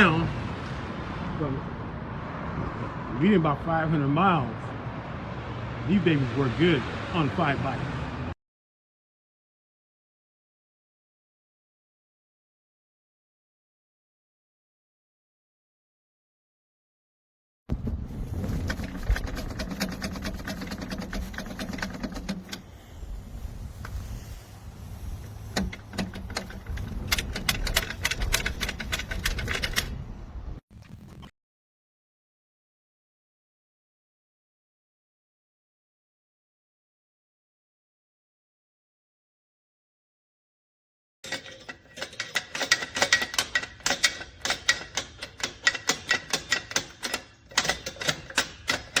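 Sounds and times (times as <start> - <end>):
moving vehicle rumble: 0.0 - 8.4, 17.7 - 31.3
bike carrier clicking and rattling: 17.7 - 22.8, 25.1 - 30.2, 41.3 - 49.0
rapid clicking and clacking: 18.5 - 22.6, 25.6 - 29.9.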